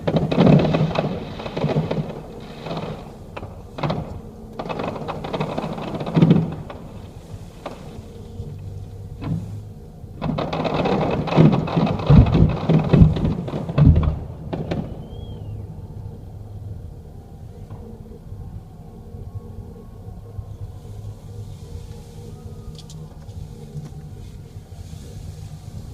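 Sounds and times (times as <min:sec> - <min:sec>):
fireworks crackling and booming: 0:00.0 - 0:09.6, 0:10.2 - 0:15.6.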